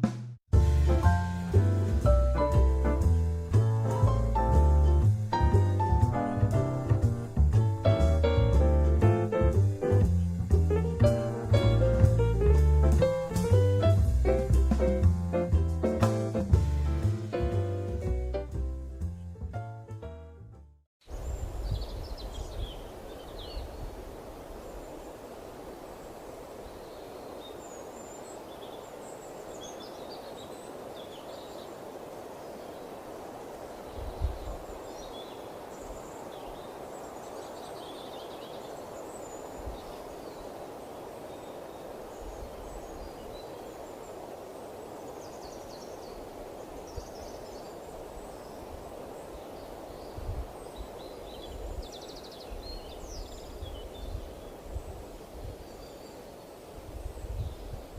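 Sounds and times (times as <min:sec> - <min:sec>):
small birds chirping: 0:21.0 - 0:57.9
steady wind: 0:21.0 - 0:57.9
wind buffeting microphone: 0:21.1 - 0:26.8, 0:33.1 - 0:37.8, 0:38.8 - 0:55.9, 0:56.7 - 0:57.9.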